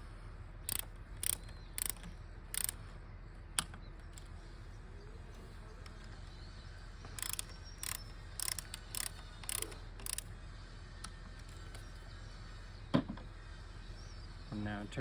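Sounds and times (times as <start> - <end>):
ratchet wrench clicking: 0.7 - 2.8, 7.2 - 10.3.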